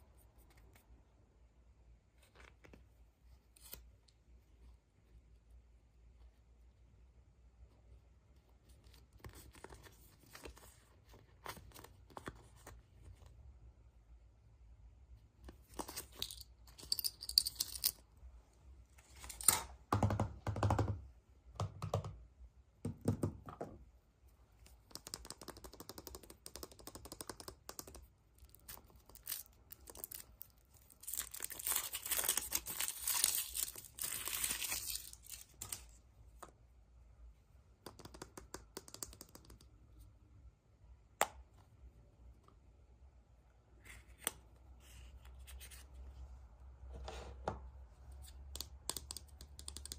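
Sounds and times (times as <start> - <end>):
packaging tearing and crinkling: 30.8 - 35.6.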